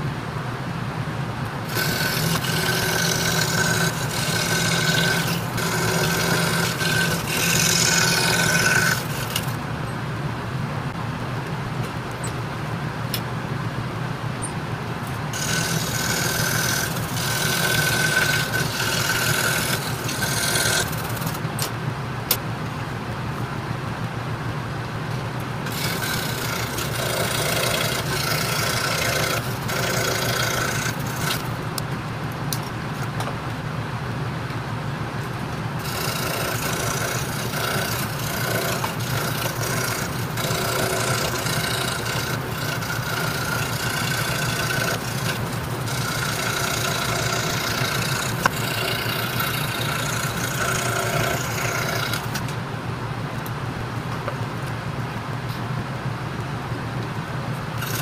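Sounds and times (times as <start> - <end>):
scroll saw motor hum: 1.4 - 9.6, 14.4 - 21.7, 25.6 - 31.9, 35.2 - 52.5, 57.8 - 58.0
saw blade rasping through wood: 1.6 - 9.6, 15.3 - 21.4, 25.6 - 31.6, 35.8 - 52.4, 57.8 - 58.0.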